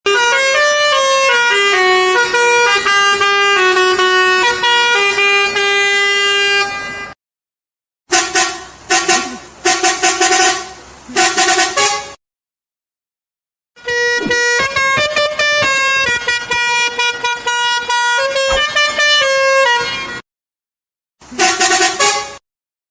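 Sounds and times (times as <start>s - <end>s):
musical bus horn tune: 0.0s - 7.2s, 8.1s - 12.2s, 13.8s - 20.2s, 21.2s - 22.4s
short horn blasts: 0.1s - 7.2s, 8.1s - 12.2s, 13.8s - 20.2s, 21.2s - 22.4s.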